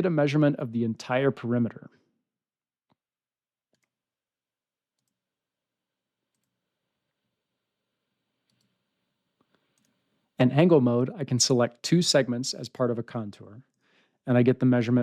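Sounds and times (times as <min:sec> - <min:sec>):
computer mouse clicks: 0:03.7 - 0:03.9, 0:05.0 - 0:05.2, 0:06.3 - 0:06.5, 0:08.5 - 0:08.7.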